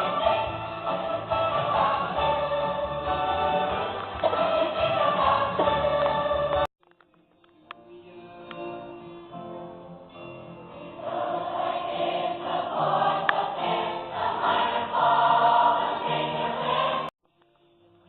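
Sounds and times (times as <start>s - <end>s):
choir singing held notes: 0.0s - 6.7s, 10.7s - 17.1s.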